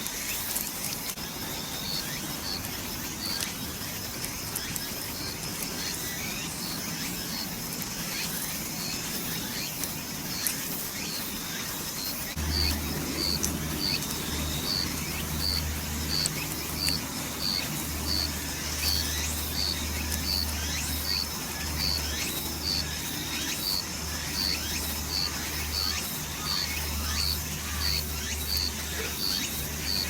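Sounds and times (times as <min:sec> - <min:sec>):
insect chirping: 0:00.1 - 0:30.0
low hum: 0:12.3 - 0:21.8.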